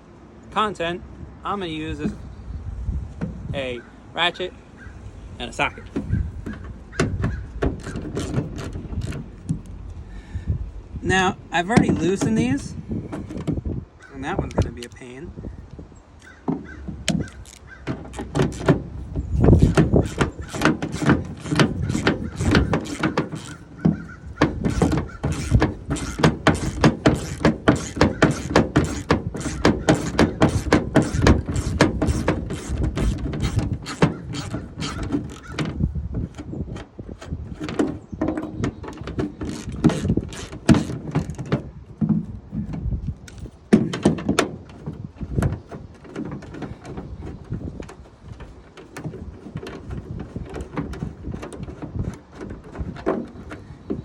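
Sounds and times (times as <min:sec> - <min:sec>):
ratchet clicking rapidly: 0:19.4 - 0:23.6, 0:24.6 - 0:35.6, 0:39.4 - 0:41.0.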